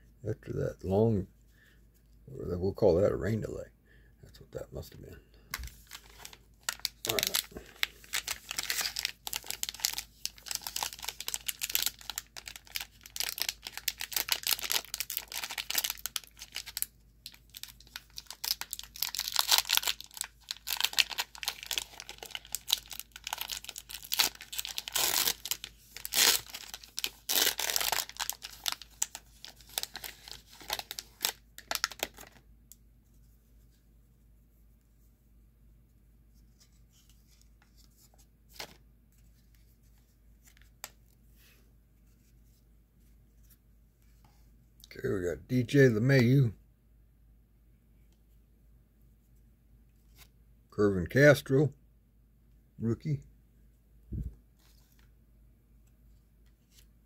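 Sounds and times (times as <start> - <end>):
foil wrappers tearing and crinkling: 5.7 - 32.4.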